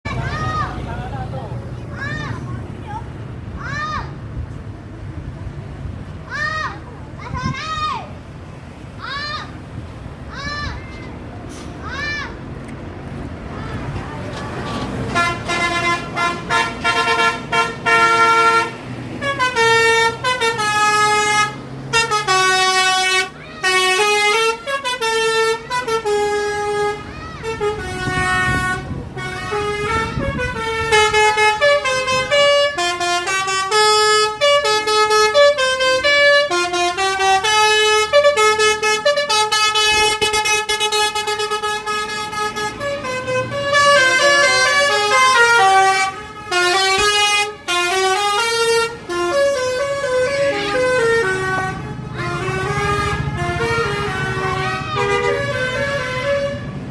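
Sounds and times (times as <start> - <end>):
multi-tone bus horn tune: 14.7 - 56.9.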